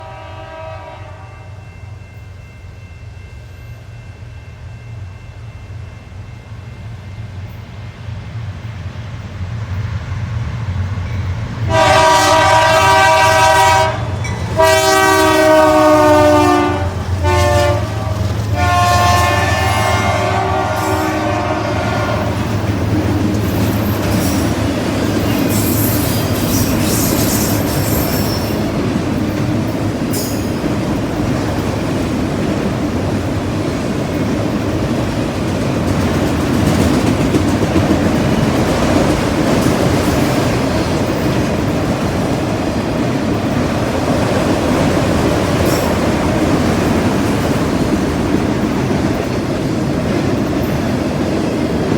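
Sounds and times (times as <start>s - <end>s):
train air horn: 0.0s - 1.8s, 11.7s - 22.6s
diesel locomotive engine rumble: 0.0s - 51.9s
train cars rumbling over rails: 0.0s - 51.9s
wheel squeal: 23.4s - 28.7s.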